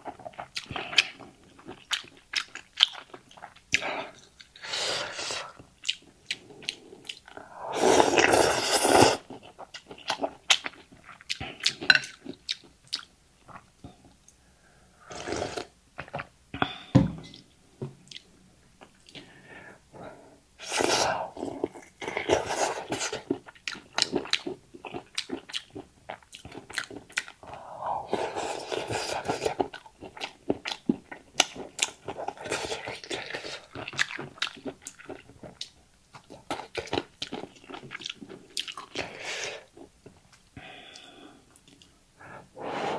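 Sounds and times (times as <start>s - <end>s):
wet chewing: 5.6s - 13.7s, 21.4s - 41.9s
noodle slurping: 7.4s - 9.3s.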